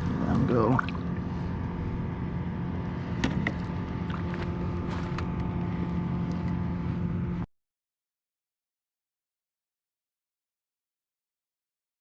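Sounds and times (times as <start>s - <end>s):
high whine: 0.0s - 7.5s
steady low hum: 0.0s - 7.5s.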